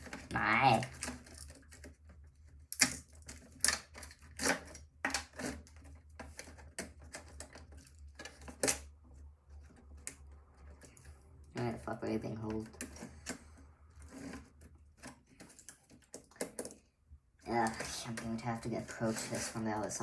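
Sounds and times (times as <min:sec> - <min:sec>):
plastic computer parts clicking: 0:12.4 - 0:16.8.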